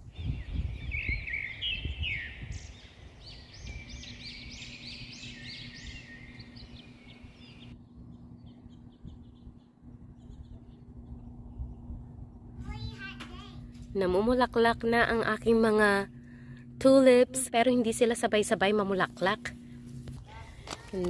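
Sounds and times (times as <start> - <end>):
songbird singing: 0.0 - 12.5
wind rumble on microphone: 0.0 - 13.0.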